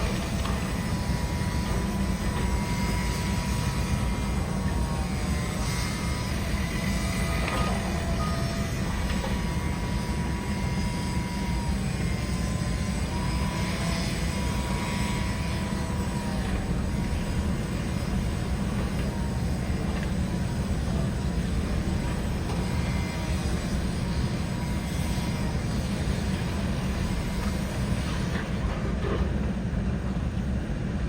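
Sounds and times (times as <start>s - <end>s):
faint high squeals: 0.0s - 27.8s
demolition machinery rumble: 0.0s - 31.0s.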